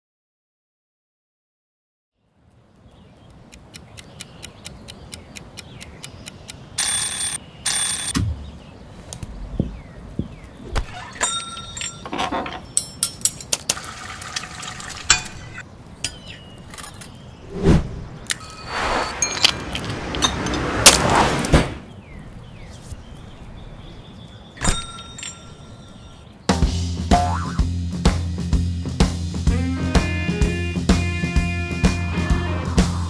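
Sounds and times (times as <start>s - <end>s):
sharp clicks and ticks: 3.3s - 8.2s
bell-like ringing tones: 6.8s - 8.2s, 18.4s - 19.5s, 24.6s - 26.3s
short ringing bursts: 6.8s - 8.2s.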